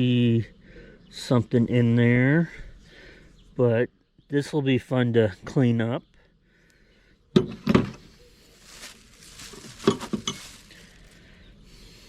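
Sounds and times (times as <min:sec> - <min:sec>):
light rubbing and rustling: 0:07.8 - 0:11.2.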